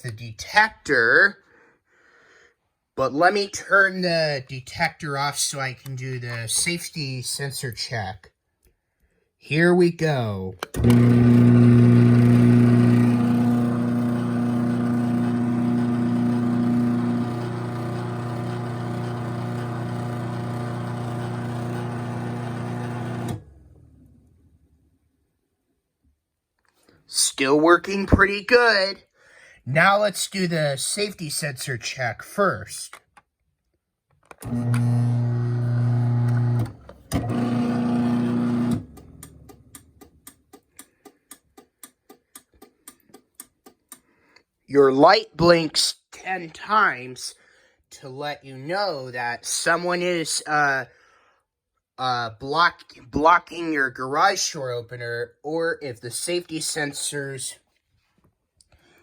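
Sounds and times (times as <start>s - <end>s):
garage door opener motor: 10.6s - 24.4s, 34.4s - 40.0s.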